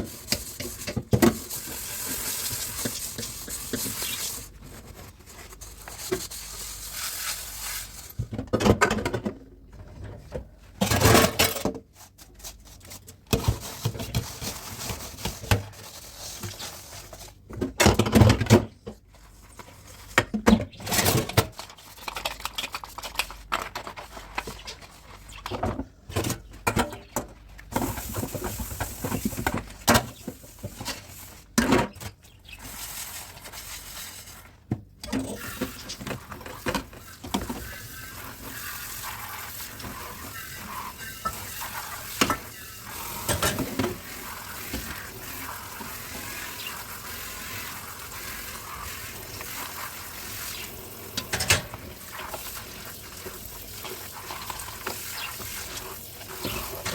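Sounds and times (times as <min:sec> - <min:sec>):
tap running: 0:35.3 - 0:48.2.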